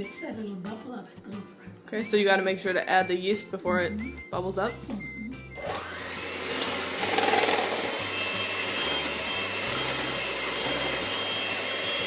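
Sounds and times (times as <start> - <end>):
electric mixer whirring: 5.5 - 12.0.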